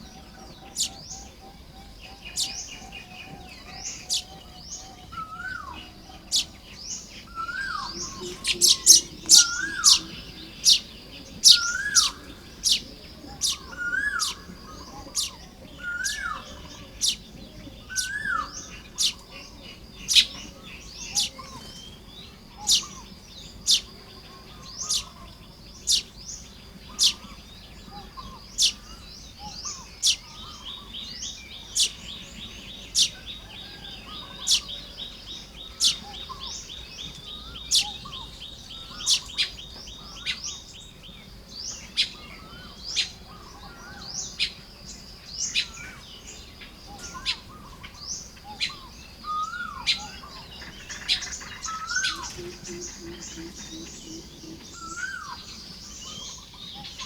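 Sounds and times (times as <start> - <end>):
rapid buzzing bird chatter: 0.0 - 57.0
soft bird twittering: 0.0 - 57.0
sharp bird chirps: 3.6 - 17.2, 17.8 - 20.4, 21.0 - 21.9, 22.6 - 40.8.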